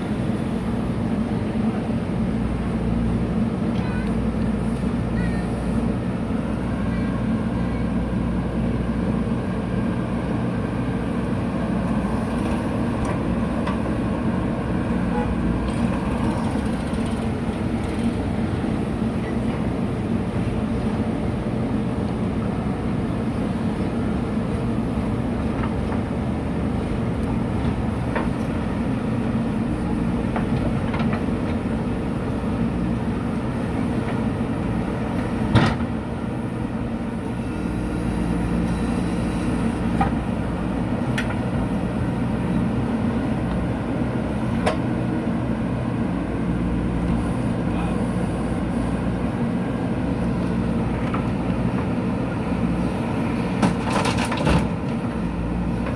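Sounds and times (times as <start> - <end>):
diesel engine running: 0.0 - 55.9.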